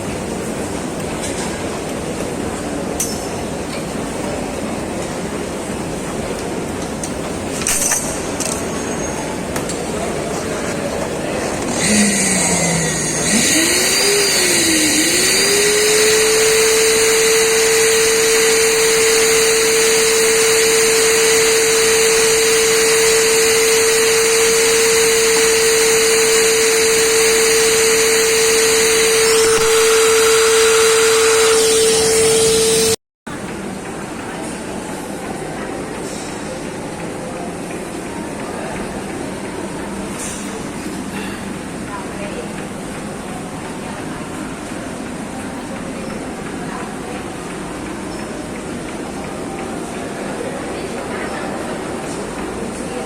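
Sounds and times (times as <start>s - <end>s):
treadmill motor whining: 10.9s - 33.0s.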